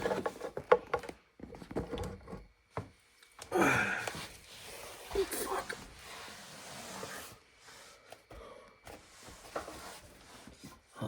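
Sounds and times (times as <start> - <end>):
person sighing and groaning: 3.5 - 4.2.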